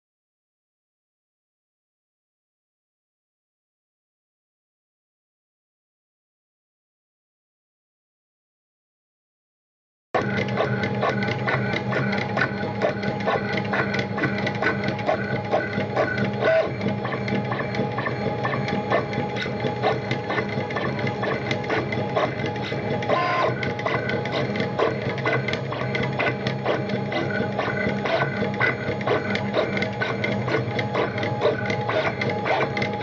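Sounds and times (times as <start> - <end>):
stepper motors whirring: 10.2 - 33.0.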